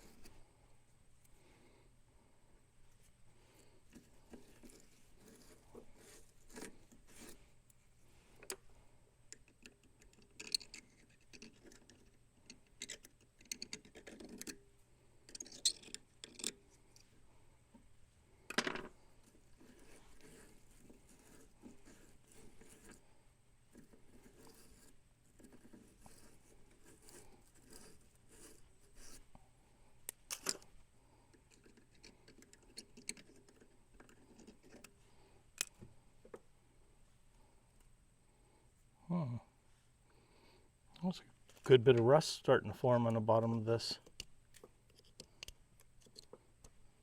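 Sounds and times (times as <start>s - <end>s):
small parts scratching and clicking: 3.9s - 7.8s, 9.3s - 17.2s, 18.5s - 23.0s, 23.7s - 29.3s, 30.1s - 30.7s, 31.3s - 35.0s, 35.6s - 36.4s, 44.0s - 46.8s.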